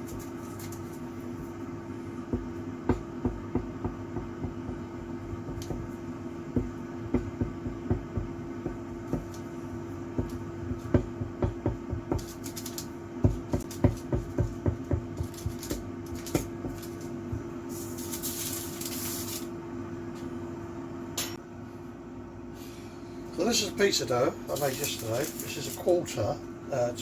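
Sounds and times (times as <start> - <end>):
steady hum: 0.0 - 27.0
rustling scrape: 17.7 - 19.5.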